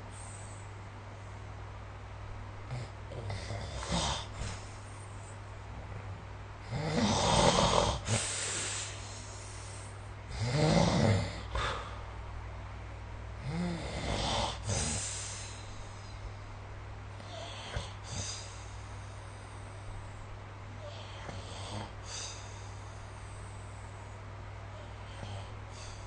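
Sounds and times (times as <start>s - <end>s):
faint breathing: 0.0s - 1.6s, 8.0s - 10.2s, 11.4s - 12.2s, 14.1s - 16.6s, 17.2s - 26.0s
person snoring: 2.7s - 4.6s, 6.6s - 8.9s, 10.3s - 12.0s, 13.4s - 15.6s, 20.8s - 22.6s, 24.8s - 26.0s.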